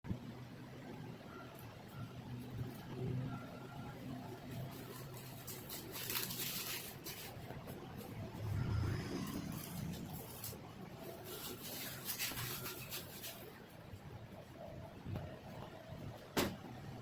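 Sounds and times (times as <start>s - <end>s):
faint rubbing and handling noises: 1.5s - 16.4s
low rumble: 8.1s - 11.0s.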